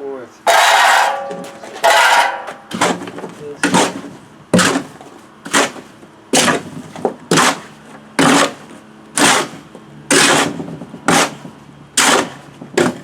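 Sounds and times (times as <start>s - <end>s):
hand float scraping concrete: 0.5s - 4.9s, 9.2s - 13.0s.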